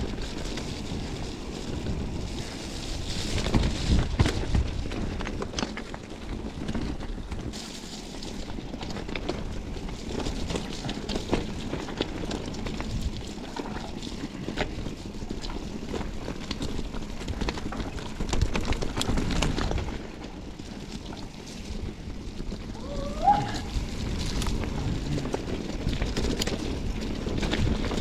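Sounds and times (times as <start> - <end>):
wind on microphone: 0.0 - 7.6, 21.6 - 28.0
bike clicks and rattles: 0.0 - 28.0
bike tyres on dirt trail: 0.0 - 28.0.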